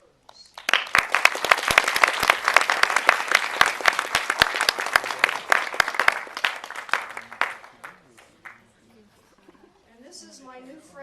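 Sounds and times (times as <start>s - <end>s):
audience applauding: 0.5s - 8.6s.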